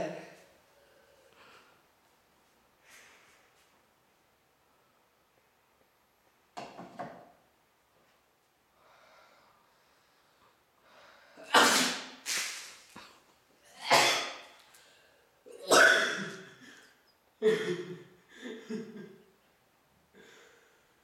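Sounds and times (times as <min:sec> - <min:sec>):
boy sneezing: 0:11.4 - 0:12.8, 0:13.7 - 0:14.5, 0:15.5 - 0:16.5.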